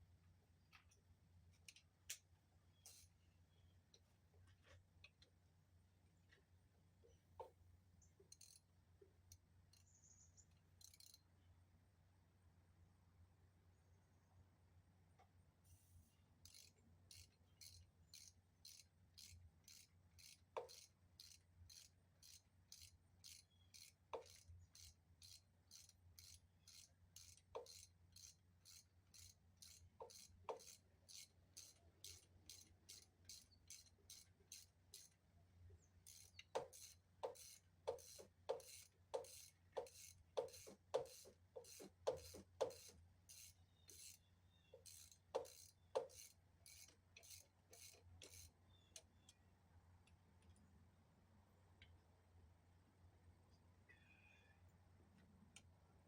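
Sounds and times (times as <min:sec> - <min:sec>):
faint regular ticking: 0:07.4 - 0:11.3, 0:16.5 - 0:35.2, 0:36.1 - 0:49.4.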